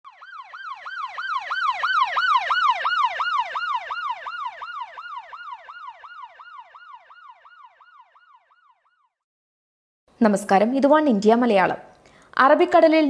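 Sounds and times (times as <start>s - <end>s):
siren yelping: 0.0s - 9.2s.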